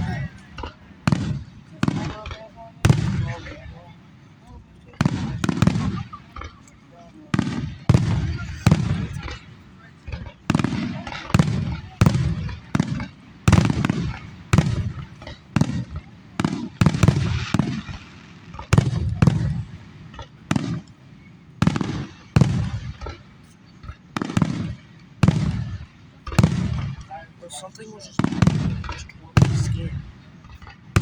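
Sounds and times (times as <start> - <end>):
firework shells bursting: 28.1 - 31.0.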